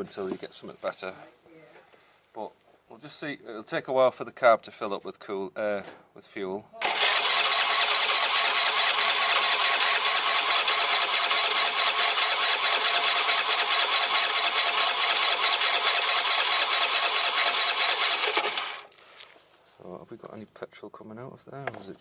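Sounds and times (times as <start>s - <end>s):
electric starter cranking engine: 6.8s - 19.0s.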